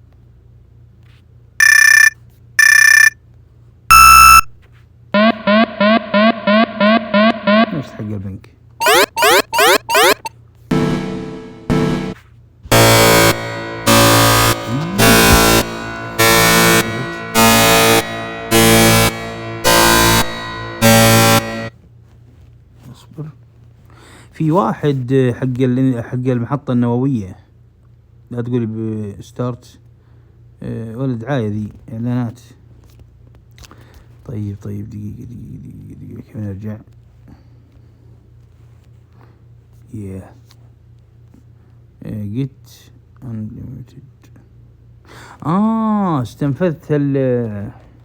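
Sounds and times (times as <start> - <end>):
alarm buzzing: 1.6 - 3.2, 3.9 - 4.5, 5.2 - 8.0, 8.8 - 21.7
buzzy low beep: 1.6 - 3.2, 3.9 - 4.5, 5.2 - 8.0, 8.8 - 12.2
clean electronic beeps: 1.6 - 3.2, 3.9 - 4.5, 8.8 - 10.3
rising whoop alarm: 8.8 - 10.3.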